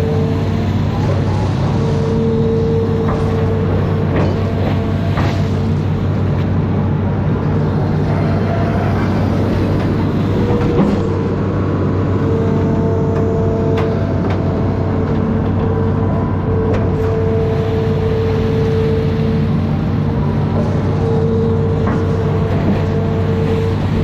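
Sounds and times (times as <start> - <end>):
excavator diesel engine running: 0.0 - 24.0
high steady whine: 0.0 - 24.0.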